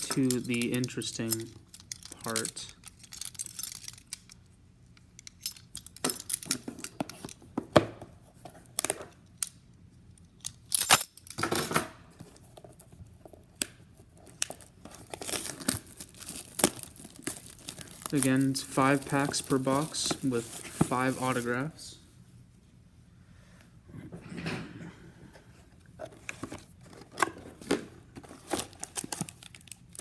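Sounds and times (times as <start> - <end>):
plastic wrapping tearing: 14.5 - 21.5.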